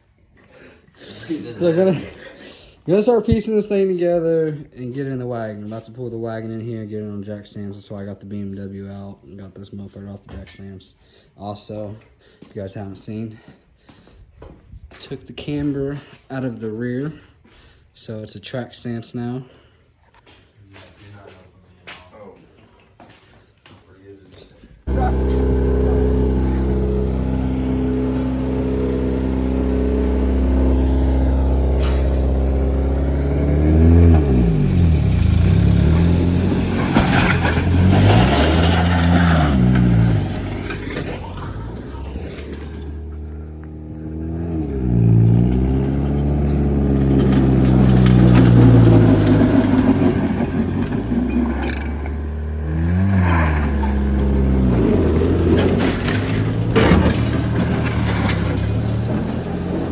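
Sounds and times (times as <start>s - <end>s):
car engine idling and revving: 24.9s - 59.9s.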